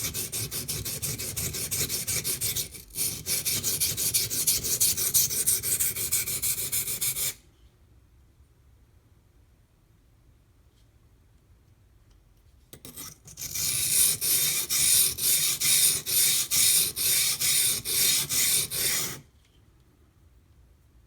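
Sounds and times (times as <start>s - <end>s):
knife rasping on whetstone: 0.0s - 7.4s, 12.8s - 19.2s.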